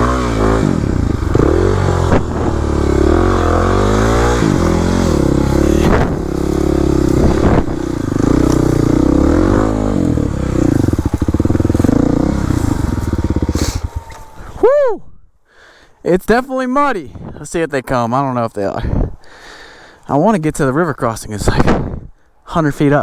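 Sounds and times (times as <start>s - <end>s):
dirt bike engine revving: 0.0s - 14.6s.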